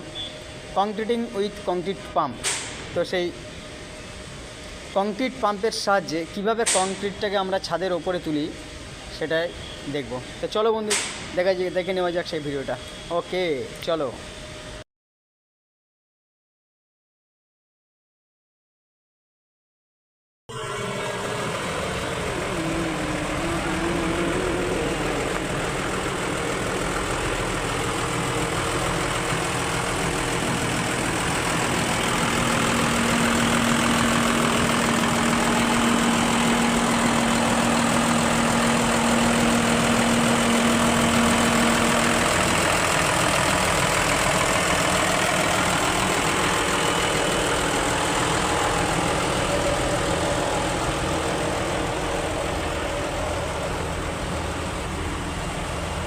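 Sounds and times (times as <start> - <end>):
concrete pump engine drone: 0.0 - 14.8, 20.5 - 56.0
steady hum: 20.5 - 56.0.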